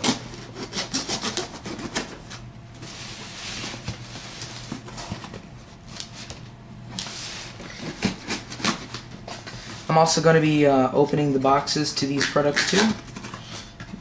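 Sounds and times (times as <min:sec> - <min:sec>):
cardboard rustling and scraping: 0:00.0 - 0:06.4.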